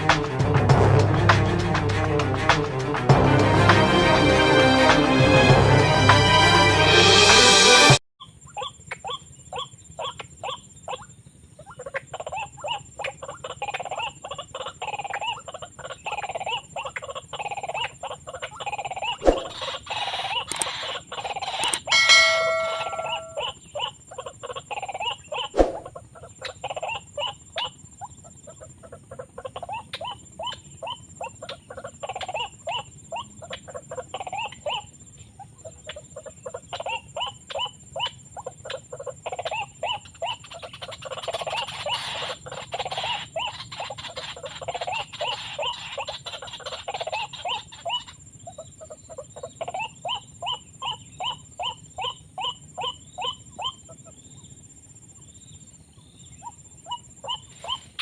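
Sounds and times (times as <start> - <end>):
waterhens calling: 38.6 - 48.1.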